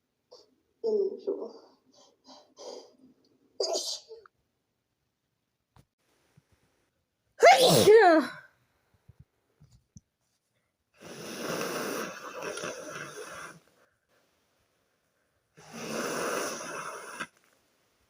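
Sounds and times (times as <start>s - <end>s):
person blowing nose: 11.0s - 13.6s, 15.6s - 17.3s.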